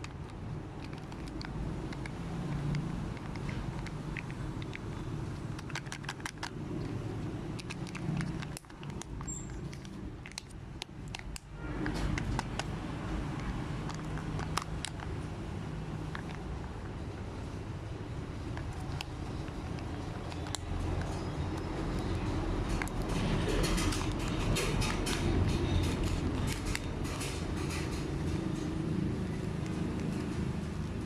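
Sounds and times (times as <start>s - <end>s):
wrappers and plastic crackling: 5.6s - 15.5s.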